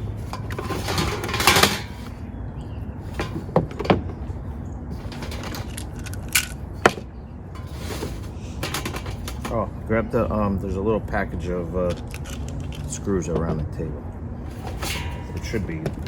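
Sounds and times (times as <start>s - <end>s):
parts clicking and knocking: 0.0s - 2.2s, 3.0s - 9.7s, 11.8s - 13.8s, 14.5s - 16.0s
steady low hum: 0.0s - 16.0s
rustling: 7.6s - 9.4s.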